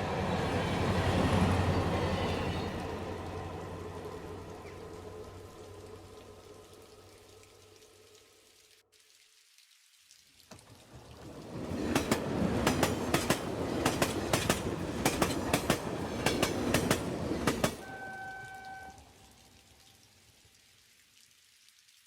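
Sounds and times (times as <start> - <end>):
train wheels clattering: 11.5 - 17.8.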